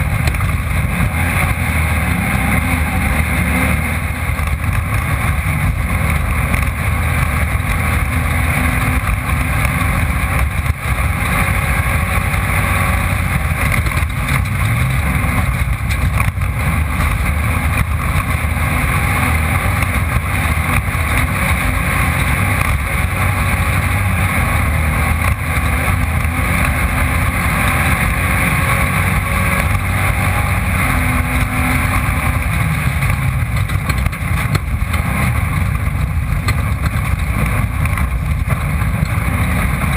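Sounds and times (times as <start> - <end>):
race car engine running hard: 0.0 - 39.9.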